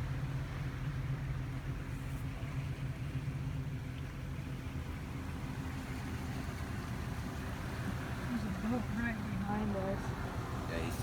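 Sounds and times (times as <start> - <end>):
motorboat engine drone: 0.0 - 11.0
wind and water hiss: 0.0 - 11.0.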